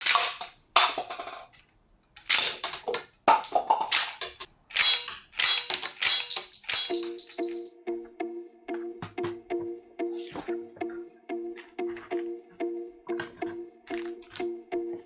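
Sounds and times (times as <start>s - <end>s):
shell rattle: 2.2s - 7.7s
toy pistol clacking: 2.2s - 7.7s.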